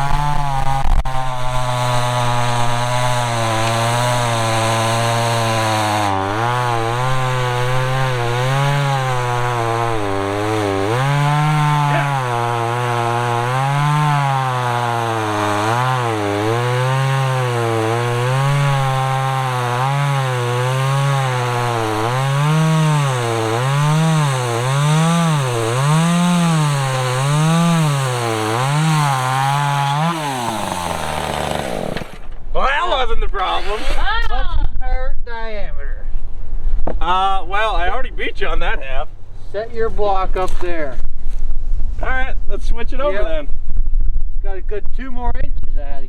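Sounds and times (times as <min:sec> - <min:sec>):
chainsaw cutting log: 0:00.0 - 0:32.5, 0:33.4 - 0:34.4.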